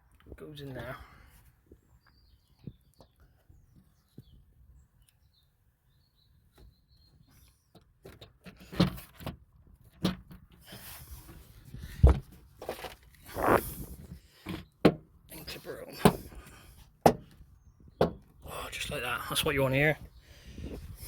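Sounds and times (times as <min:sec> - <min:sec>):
plastic parts knocking and rubbing: 0:08.0 - 0:15.0.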